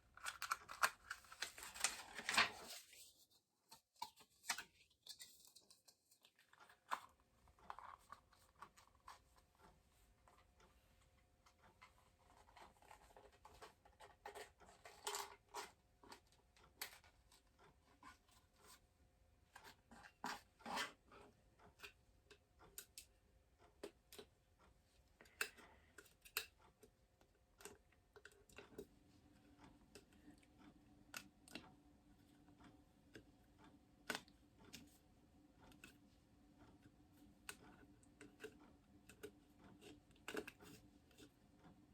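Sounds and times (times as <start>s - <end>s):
small objects clicking and rustling: 0.1s - 2.8s.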